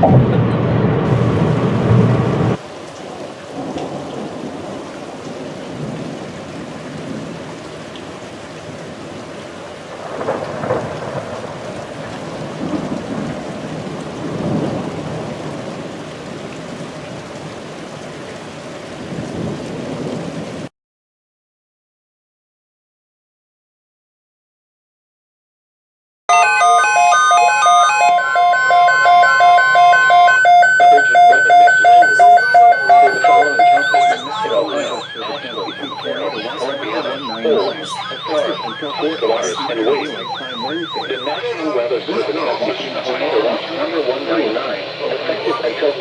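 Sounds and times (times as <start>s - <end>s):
steady rain: 0.0s - 20.7s, 27.0s - 46.0s
thunder rolling: 0.0s - 20.7s.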